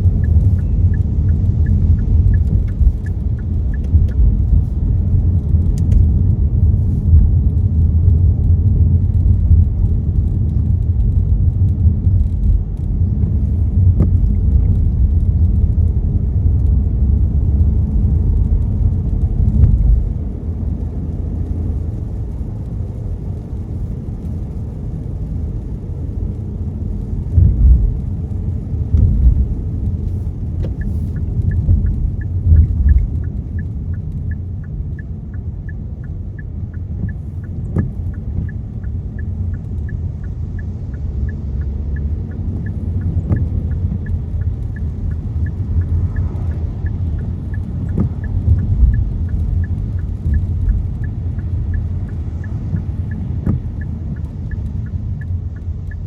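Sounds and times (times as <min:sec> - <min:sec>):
steady ticking: 0:00.0 - 0:04.7, 0:28.9 - 0:56.0
car road and tyre rumble: 0:00.0 - 0:56.0.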